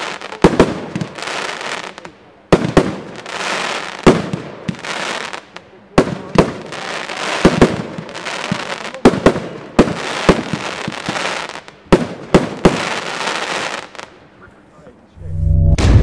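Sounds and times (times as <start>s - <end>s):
firework bangs: 2.5s - 5.3s, 5.9s - 13.9s, 15.6s - 16.0s.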